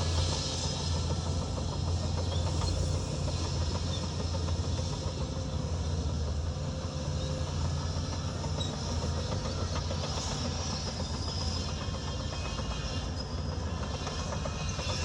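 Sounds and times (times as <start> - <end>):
diesel engine drone: 0.0 - 15.0.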